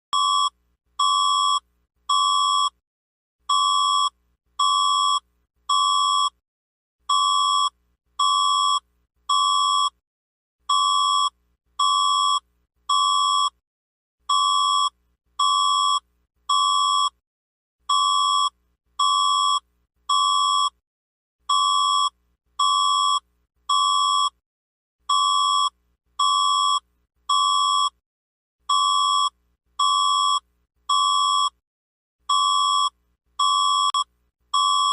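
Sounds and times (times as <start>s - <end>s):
electronic alarm beeps: 32.3s - 34.9s.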